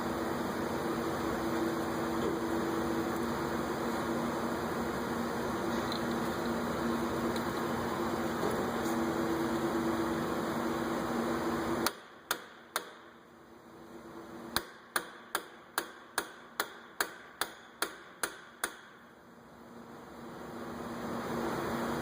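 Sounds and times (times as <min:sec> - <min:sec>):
steady whirring hum: 0:00.0 - 0:22.0
hammer striking metal: 0:11.8 - 0:13.1, 0:14.6 - 0:19.0.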